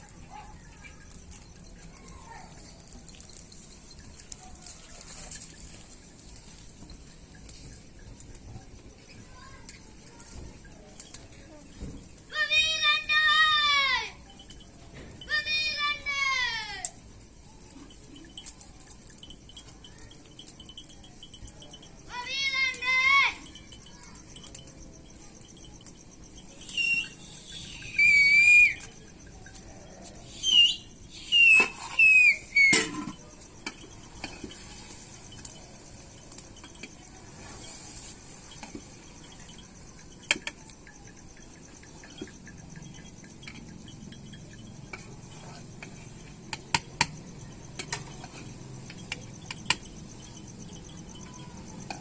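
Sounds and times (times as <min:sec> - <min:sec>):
high wavering bird-like calls: 0:17.5 - 0:52.0.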